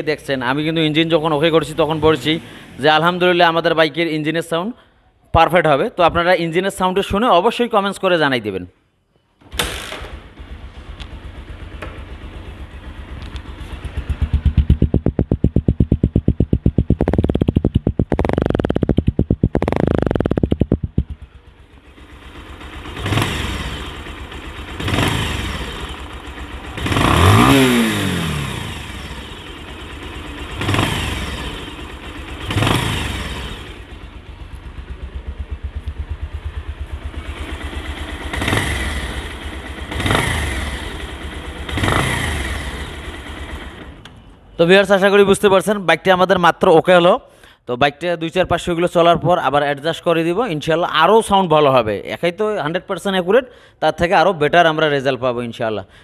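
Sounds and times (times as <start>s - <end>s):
motorcycle engine revving: 0.7s - 3.4s, 9.7s - 44.0s.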